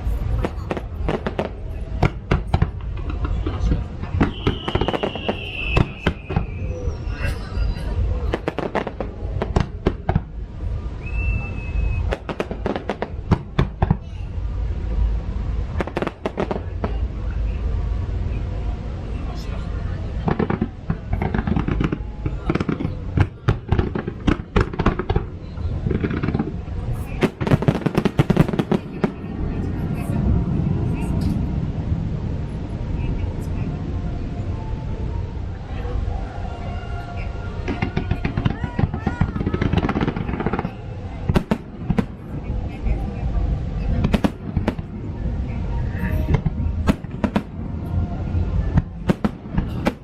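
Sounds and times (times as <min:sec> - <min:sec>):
fireworks bangs and crackles: 0:00.0 - 0:33.9, 0:37.2 - 0:50.0
low rumble: 0:00.0 - 0:50.0
high whistle: 0:04.3 - 0:07.3, 0:11.0 - 0:12.2.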